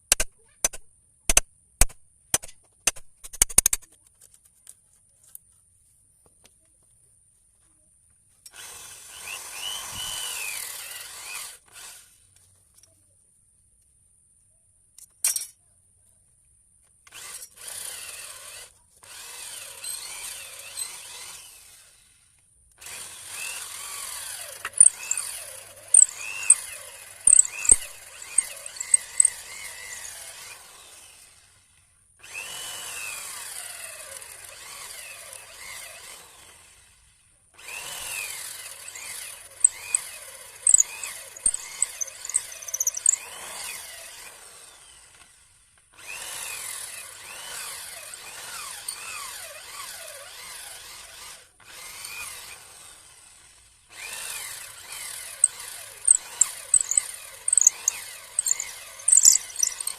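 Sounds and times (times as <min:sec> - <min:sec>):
electric drill boring into wood: 0:08.5 - 0:12.2, 0:17.1 - 0:22.1, 0:22.8 - 0:59.9.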